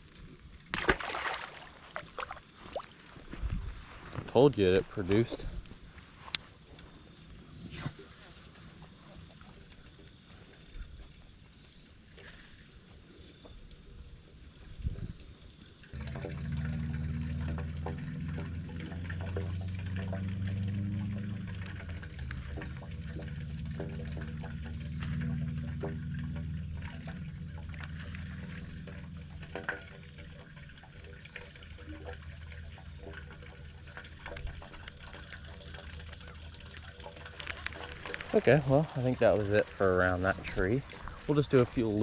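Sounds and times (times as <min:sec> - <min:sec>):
water sounds: 0:00.0 - 0:42.0
small boat motor humming: 0:15.6 - 0:42.0.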